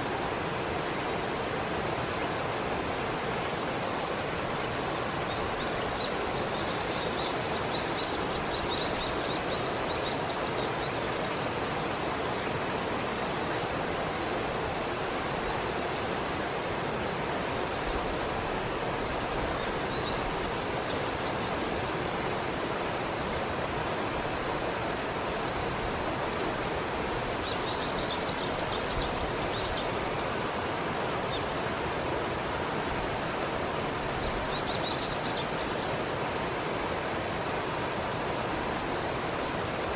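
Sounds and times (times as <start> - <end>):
background hiss: 0.0 - 39.9
insects droning: 0.0 - 39.9.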